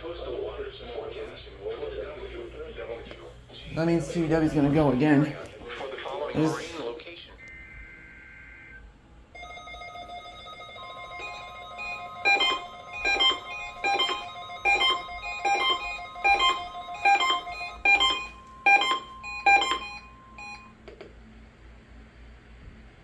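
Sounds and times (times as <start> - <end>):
receiver alarm beeps: 7.4 - 8.8, 9.4 - 20.8
warning alarm tone: 7.4 - 20.8
steady alert tones: 9.4 - 20.7.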